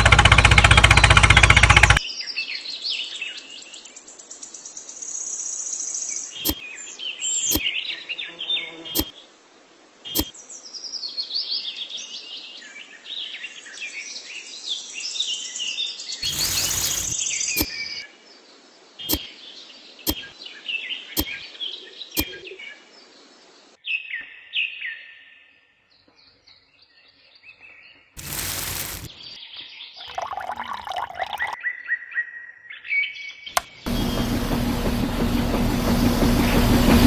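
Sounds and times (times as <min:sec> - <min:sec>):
small birds chirping: 0:14.9 - 0:23.7, 0:25.9 - 0:31.6
sharp clicks: 0:16.2 - 0:18.0.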